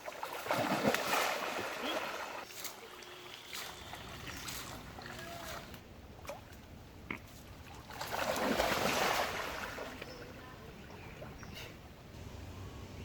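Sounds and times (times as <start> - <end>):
pond water splash: 0.0 - 10.4.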